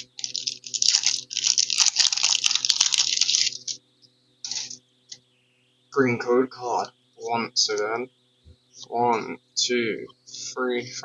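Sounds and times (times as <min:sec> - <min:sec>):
foil wrapper crinkling and tearing: 0:00.0 - 0:03.8, 0:04.5 - 0:04.8
wrapper rustling: 0:00.0 - 0:03.8, 0:04.5 - 0:04.8.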